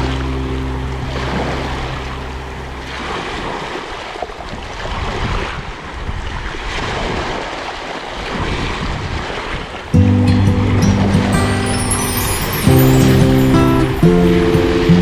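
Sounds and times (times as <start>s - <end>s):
sea waves rushing: 0.0s - 3.5s, 9.9s - 15.0s.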